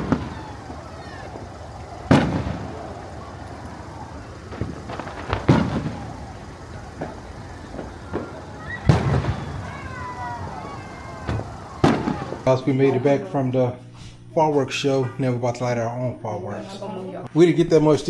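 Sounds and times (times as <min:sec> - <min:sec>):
faint firework pops: 0:00.0 - 0:12.5
firework shells booming: 0:00.0 - 0:12.6.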